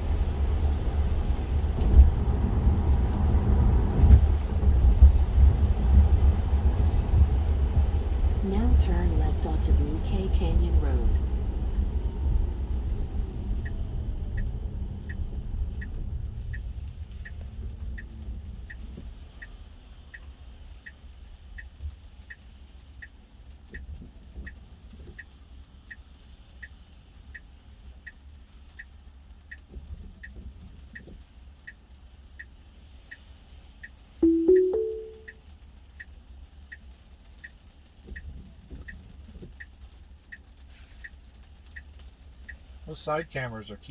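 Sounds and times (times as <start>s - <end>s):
road and tyre rumble: 0.0s - 33.8s
turn signal ticking: 3.8s - 35.4s, 36.0s - 43.9s
rising two-note car chime: 34.2s - 35.3s.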